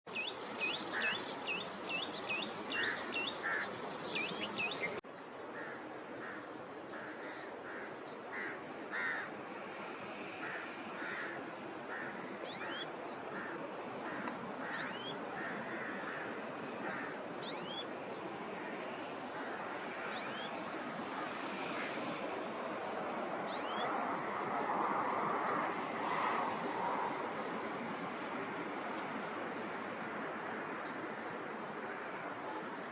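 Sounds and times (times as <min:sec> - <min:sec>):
high insect drone: 0:00.1 - 0:32.9
small birds chirping and whistling: 0:04.0 - 0:05.0, 0:12.5 - 0:12.9, 0:14.8 - 0:15.2, 0:17.4 - 0:17.9, 0:20.1 - 0:20.6, 0:23.5 - 0:23.9.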